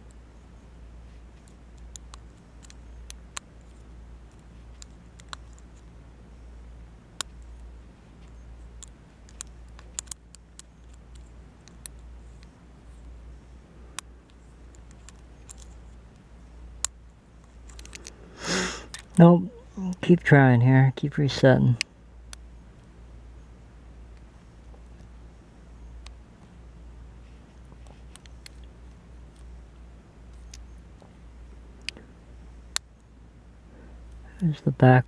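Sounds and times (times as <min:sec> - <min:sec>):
steady low hum: 0:00.0 - 0:35.0
lock pick metallic clicks: 0:08.8 - 0:12.5, 0:17.6 - 0:18.1.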